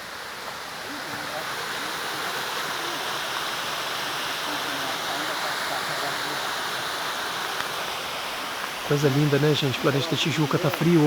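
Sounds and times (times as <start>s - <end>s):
waterfall rushing: 0.0s - 11.0s.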